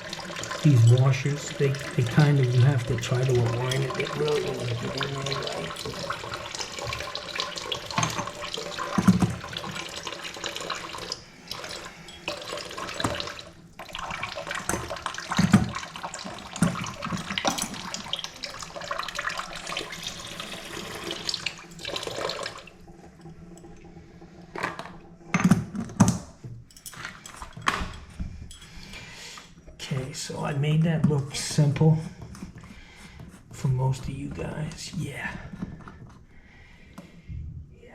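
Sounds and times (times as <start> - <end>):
water running into a sink: 0.0 - 26.1.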